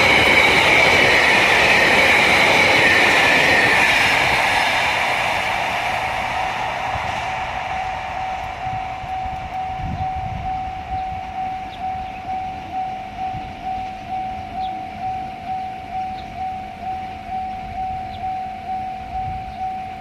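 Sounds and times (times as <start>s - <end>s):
level-crossing alarm ringing: 0.0s - 20.0s
passing train: 0.0s - 20.0s.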